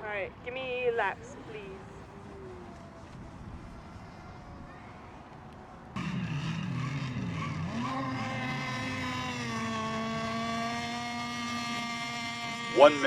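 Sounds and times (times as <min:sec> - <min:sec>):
model boat motor running: 0:06.0 - 0:13.0.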